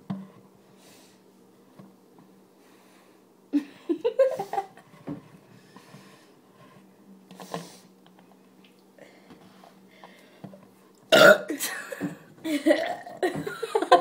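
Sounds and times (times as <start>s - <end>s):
girl gulping soda: 12.4s - 13.3s.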